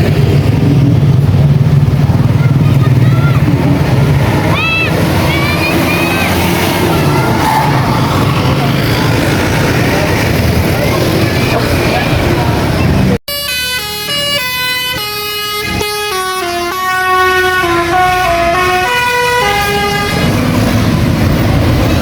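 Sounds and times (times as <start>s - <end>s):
engine and street noise: 0.0s - 22.0s
bus horn playing melody: 13.3s - 20.4s.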